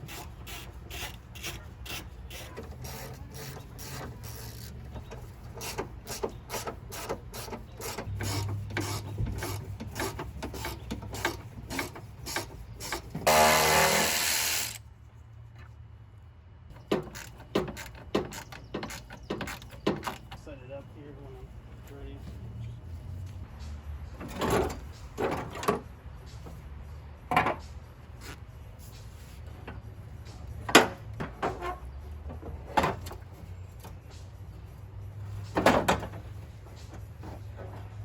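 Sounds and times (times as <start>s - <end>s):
ratchet wrench clicking: 0.1s - 4.8s, 5.5s - 14.8s.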